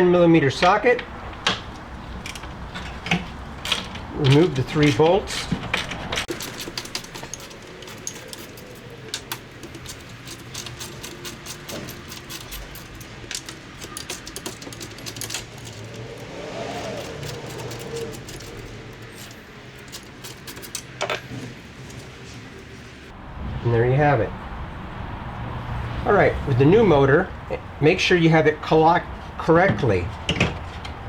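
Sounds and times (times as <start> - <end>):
ratchet and bolts clinking: 0.6 - 22.1.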